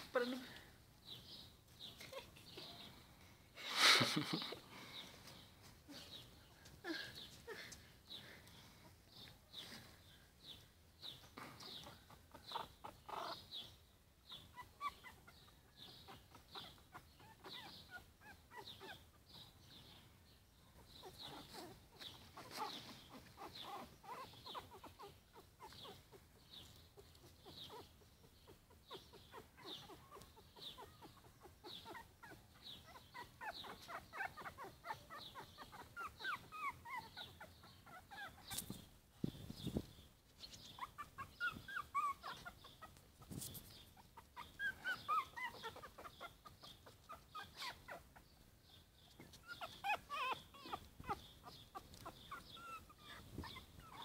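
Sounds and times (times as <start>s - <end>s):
puppies squeaking and whimpering: 12.4s - 13.7s, 14.3s - 19.5s, 20.9s - 54.0s.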